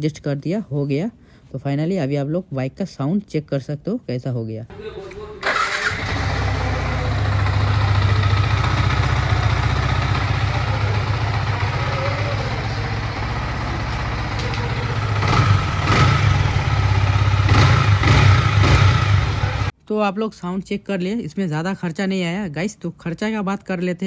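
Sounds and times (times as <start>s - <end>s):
motorcycle engine idling: 5.5s - 19.7s.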